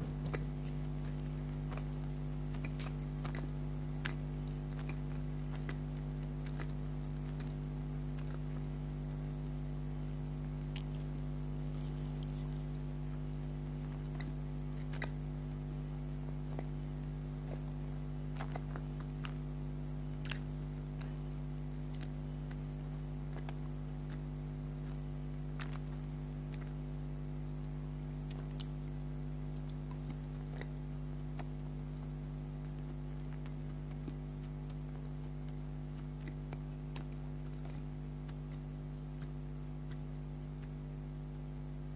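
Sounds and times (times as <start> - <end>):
steady low hum: 0.0 - 41.9
wet chewing and mouth sounds: 0.0 - 41.9.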